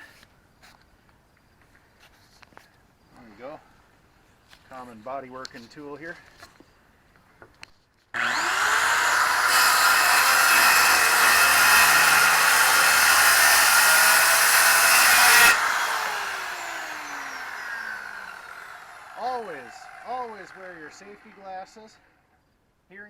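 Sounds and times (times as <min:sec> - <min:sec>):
electric cutting tool cutting: 0:08.2 - 0:21.6.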